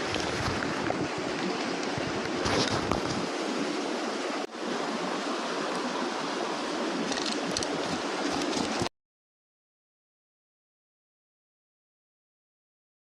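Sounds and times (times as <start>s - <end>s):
mountain stream rushing: 0.0s - 8.9s.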